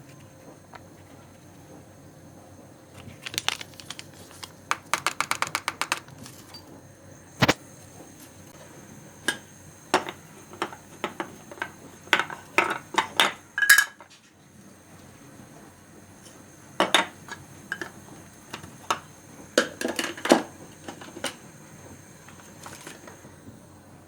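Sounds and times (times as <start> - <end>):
clicks of small hard objects: 3.0 - 6.5.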